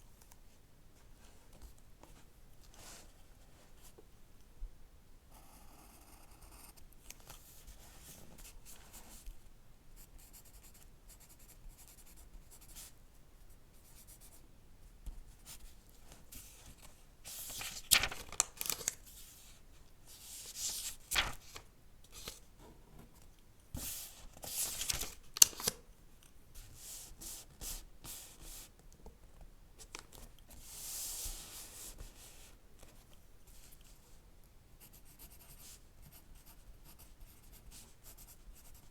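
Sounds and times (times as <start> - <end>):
book pages rustling: 16.1 - 19.6, 20.2 - 22.5, 23.8 - 25.8
paper snapping: 17.6 - 19.0.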